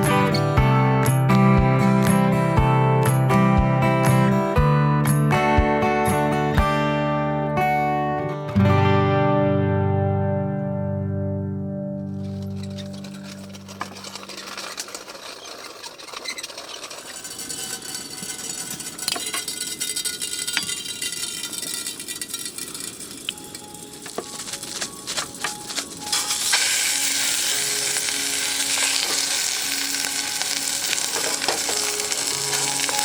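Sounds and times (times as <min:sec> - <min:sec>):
stirring and scraping clicks: 0:12.1 - 0:33.0
food sizzling in a hot pan: 0:26.1 - 0:33.0.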